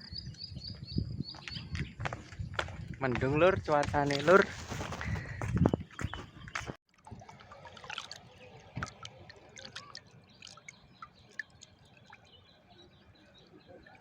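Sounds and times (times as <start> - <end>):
faint water trickling: 6.5 - 14.0.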